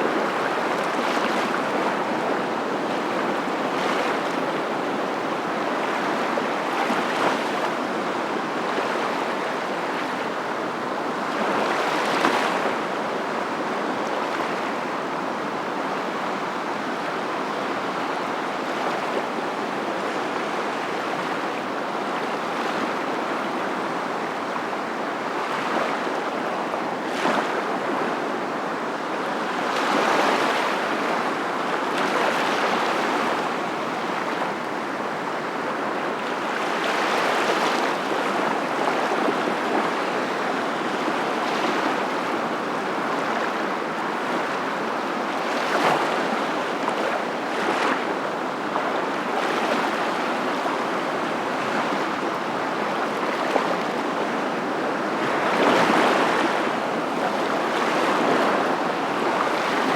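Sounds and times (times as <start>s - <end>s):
water rushing: 29.9s - 59.9s.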